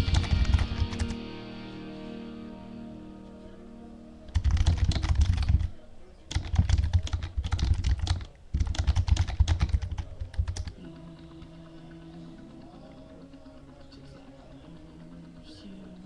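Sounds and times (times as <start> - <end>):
fast typing on keyboard: 0.0 - 1.2, 4.3 - 5.7, 6.3 - 15.1.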